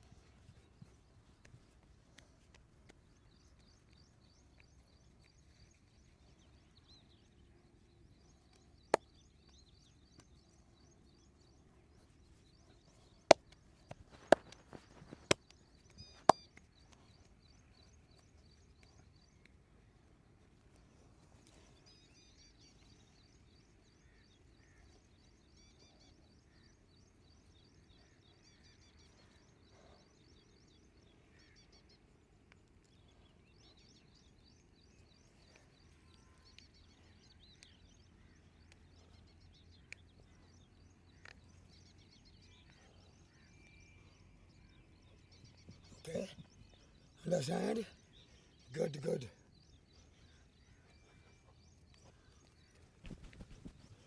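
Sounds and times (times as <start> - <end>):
small birds chirping: 0.0 - 54.0
sharp snaps from a massage: 13.3 - 15.6.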